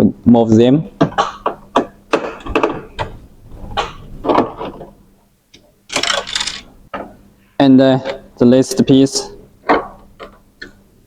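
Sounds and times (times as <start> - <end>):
screwdriver backing out screws: 5.9 - 6.7.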